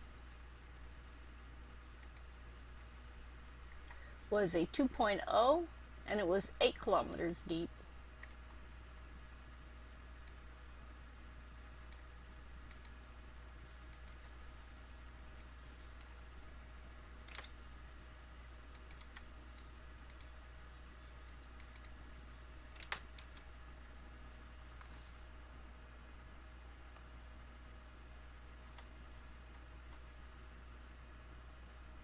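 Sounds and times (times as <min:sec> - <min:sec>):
faint low hum: 0:00.0 - 0:32.0
keyboard and mouse clicks: 0:02.0 - 0:02.3, 0:12.7 - 0:13.0, 0:13.9 - 0:16.1, 0:17.2 - 0:17.6, 0:18.7 - 0:19.3, 0:20.0 - 0:20.3, 0:21.4 - 0:22.0, 0:22.8 - 0:23.5.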